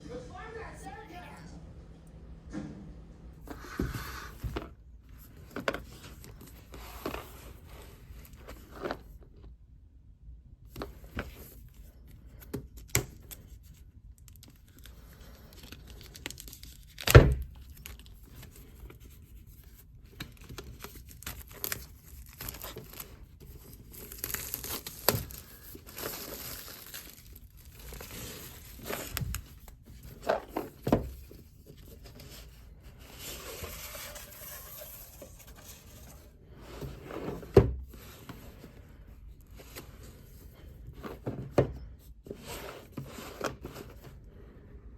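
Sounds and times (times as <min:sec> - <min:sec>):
packaging tearing and crinkling: 0:20.4 - 0:29.6.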